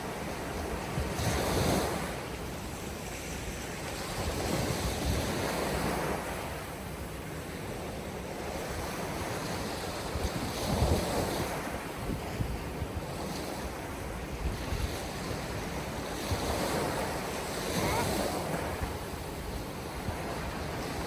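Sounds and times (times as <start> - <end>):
surf washing on a beach: 0.0 - 21.0
wind buffeting the microphone: 0.0 - 21.0.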